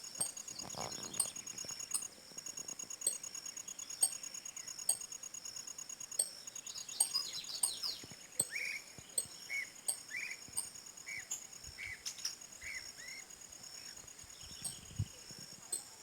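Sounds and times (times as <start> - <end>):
birds chirping: 0.0 - 2.1, 6.2 - 16.0
insect trill: 0.0 - 16.0.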